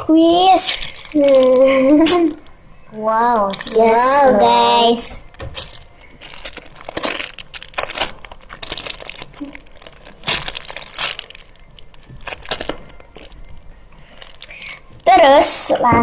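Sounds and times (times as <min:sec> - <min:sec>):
squishies crackling when squeezed: 0:05.2 - 0:15.8.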